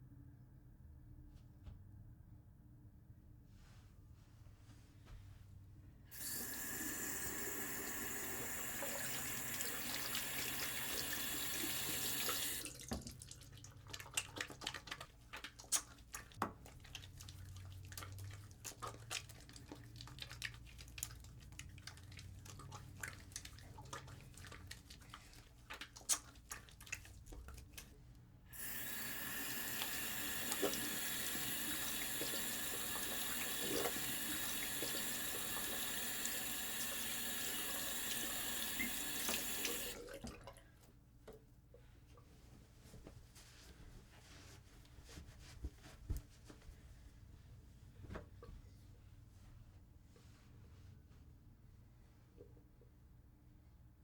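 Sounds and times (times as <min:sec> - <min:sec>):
soapy hands rubbing together: 0:12.7 - 0:27.9
tap running: 0:28.6 - 0:40.0.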